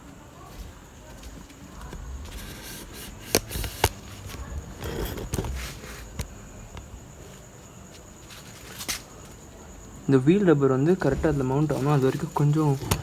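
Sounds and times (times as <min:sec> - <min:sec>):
low handling noise: 0:00.5 - 0:07.8.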